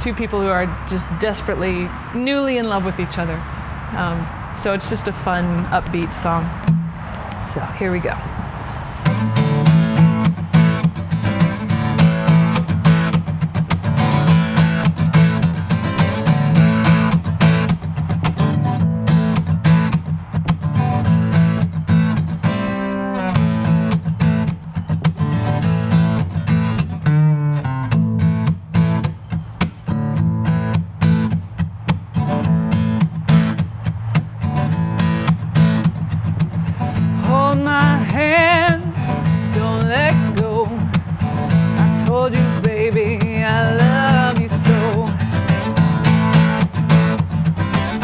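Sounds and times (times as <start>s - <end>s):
acoustic guitar strumming: 0.0s - 48.0s.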